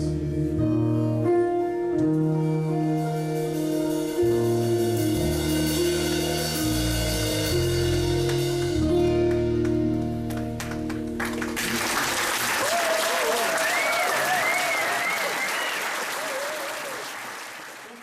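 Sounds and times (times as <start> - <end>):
held bass notes: 0.0 - 12.0
live rock band playing: 0.0 - 12.4.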